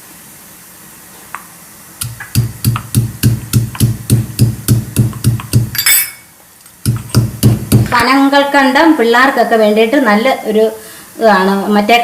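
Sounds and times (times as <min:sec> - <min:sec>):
pestle pounding in mortar: 0:02.0 - 0:05.9, 0:06.8 - 0:08.1.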